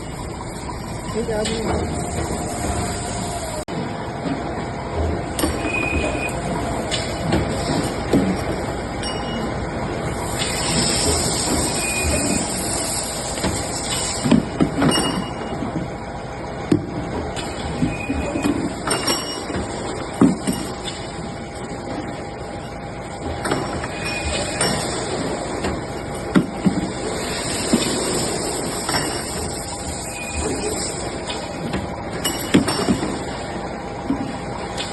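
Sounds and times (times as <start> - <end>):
machine running: 0.0 - 14.4.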